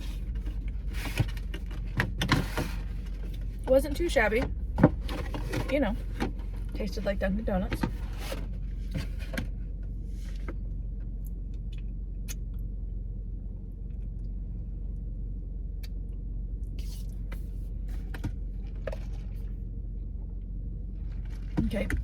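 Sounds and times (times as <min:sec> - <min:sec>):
car cabin rumble: 0:00.0 - 0:22.0.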